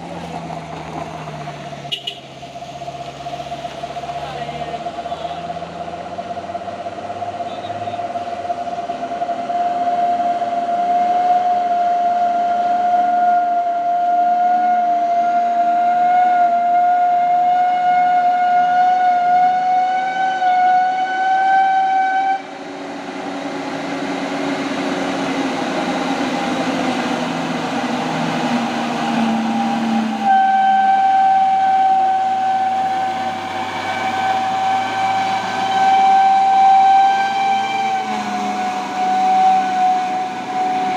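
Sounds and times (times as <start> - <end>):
heavy truck engine labouring: 0.0 - 40.9
high-pitched whine: 22.3 - 40.9.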